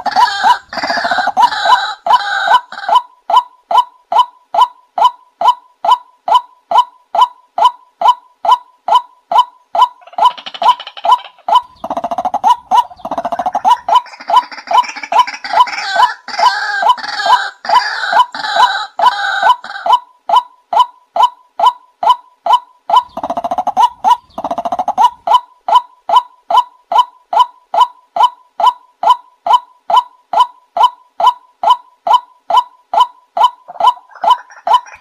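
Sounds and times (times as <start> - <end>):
bird harsh croaking: 0.0 - 3.0, 8.4 - 20.0, 22.9 - 25.8, 31.2 - 35.0
bird sharp repeated calls: 0.0 - 35.0.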